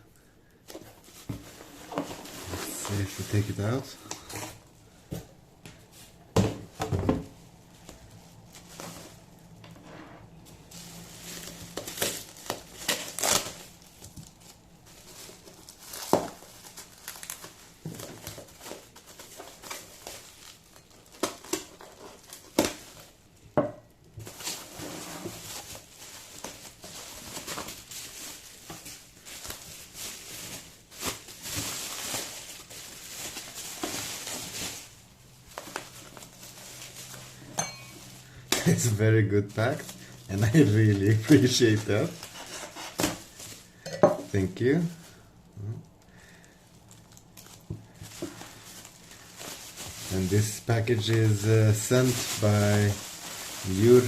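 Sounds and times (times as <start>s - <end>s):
packing material crinkling and rustling: 0.0s - 23.5s, 24.1s - 54.0s.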